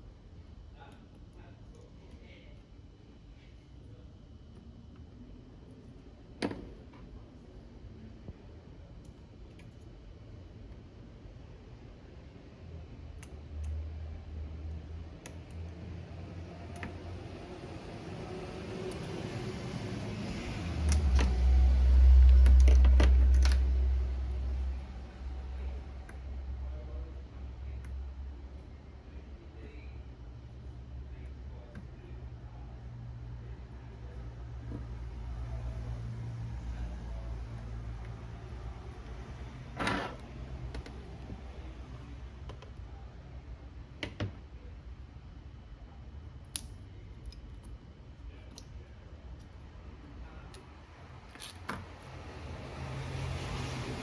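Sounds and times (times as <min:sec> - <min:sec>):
low steady hum: 0:00.0 - 0:54.0
repair tools clicking on phone parts: 0:16.7 - 0:17.1
small sharp clicks and taps: 0:46.5 - 0:47.8.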